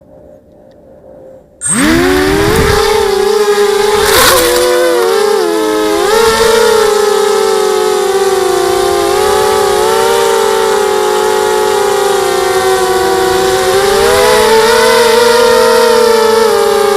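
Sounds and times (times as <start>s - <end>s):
quadcopter motors whining: 0.0s - 16.9s.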